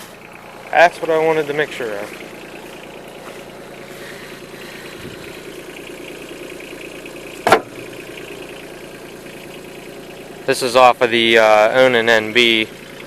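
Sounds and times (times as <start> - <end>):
tractor engine idling: 0.0 - 13.0
sharp knock: 7.4 - 7.7.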